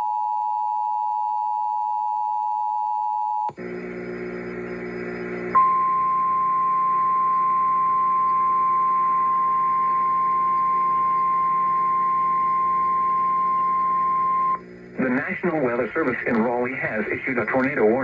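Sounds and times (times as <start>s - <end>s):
faint low hum: 3.5s - 18.0s
steady high alarm tone: 5.6s - 14.6s.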